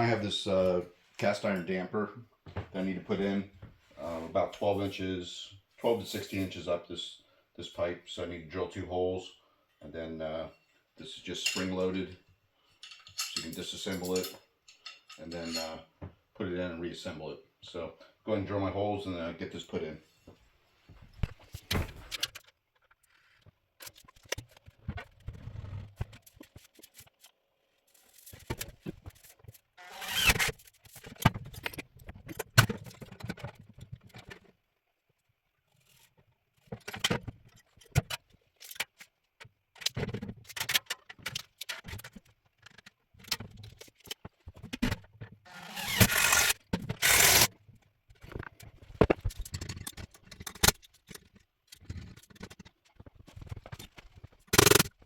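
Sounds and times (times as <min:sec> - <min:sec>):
metal clicks and clatter: 0:12.8 - 0:15.8, 0:45.8 - 0:47.5, 0:48.2 - 0:55.0
metal scraping: 0:45.5 - 0:47.5, 0:54.5 - 0:54.9.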